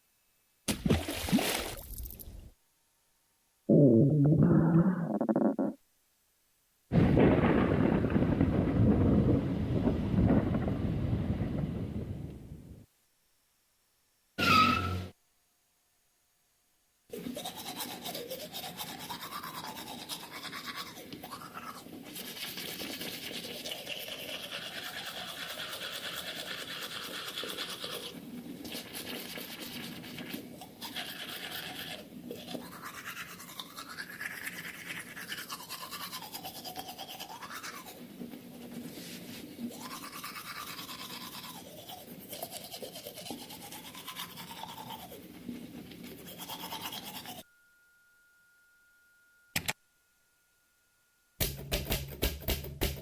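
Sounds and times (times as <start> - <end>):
buzzing scrubbing noise sweeping tone: 3.7 - 5.8.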